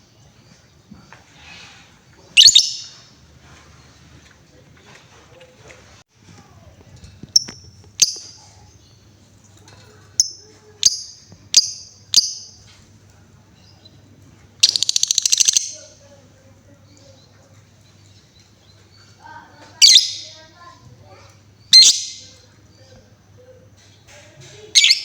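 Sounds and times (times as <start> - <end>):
lovebird chirping: 2.4 - 3.0, 10.1 - 12.6, 14.6 - 16.0, 19.8 - 20.4, 21.6 - 22.8, 24.8 - 25.0
lovebird rattling trill: 2.4 - 3.0, 14.6 - 16.0.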